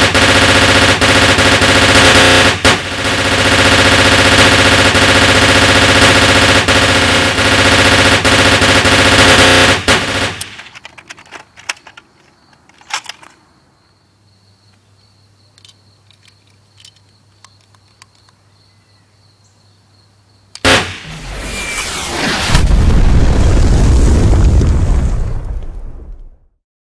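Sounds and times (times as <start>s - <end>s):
gunshots: 0.0s - 12.0s, 20.6s - 23.7s
faint clicks: 15.5s - 18.4s
sharp bang: 20.6s - 23.6s
rising rush of noise: 20.7s - 24.2s.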